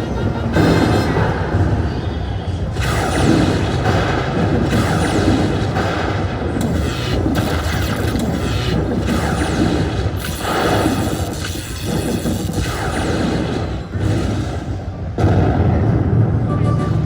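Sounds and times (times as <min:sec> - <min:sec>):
booming crashes: 0:00.0 - 0:17.0
electronic slot machine music: 0:06.6 - 0:12.3.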